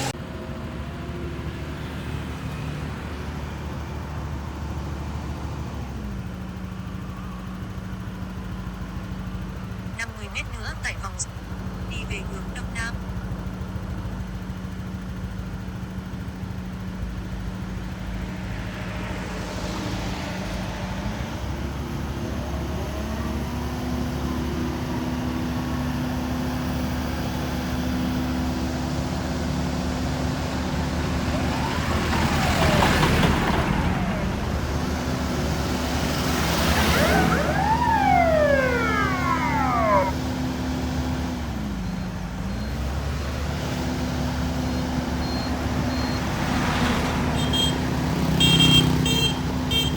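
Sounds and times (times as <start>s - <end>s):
road noise: 0.0s - 49.9s
vehicle engine running: 0.0s - 49.9s
passing swell with rising tone: 36.7s - 40.4s.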